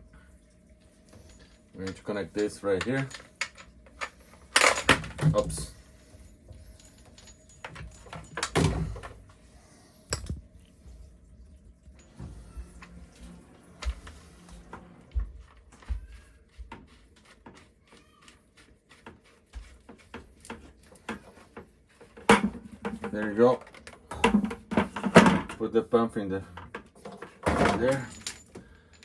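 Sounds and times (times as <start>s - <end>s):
hose fittings knocking and scraping: 19.0s - 25.6s.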